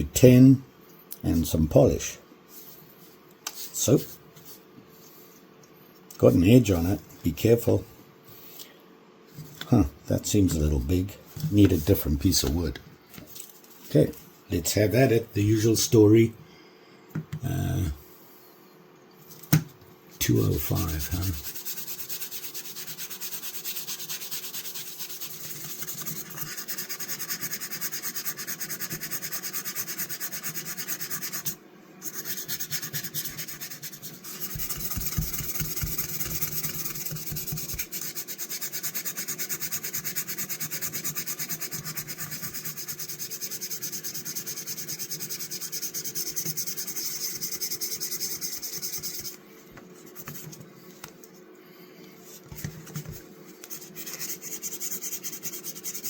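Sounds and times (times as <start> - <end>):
sandpaper rubbing on metal blade: 20.3 - 49.4, 53.7 - 56.0.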